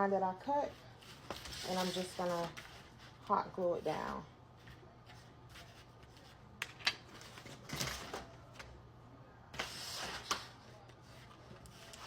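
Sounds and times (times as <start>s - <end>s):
paper rustling and rubbing: 0.8s - 3.3s.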